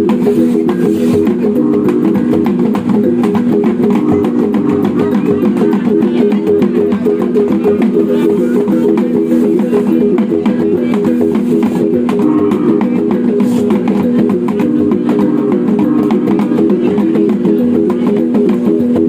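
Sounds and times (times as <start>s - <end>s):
gong ensemble playing: 0.0s - 19.0s.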